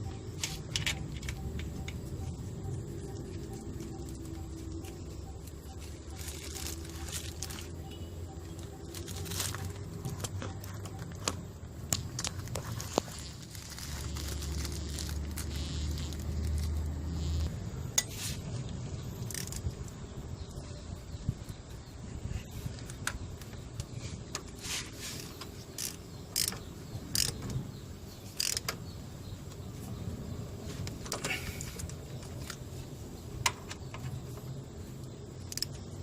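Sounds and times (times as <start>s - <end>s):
low steady hum: 0.0s - 24.2s
hand tools clicking on metal: 25.8s - 27.4s.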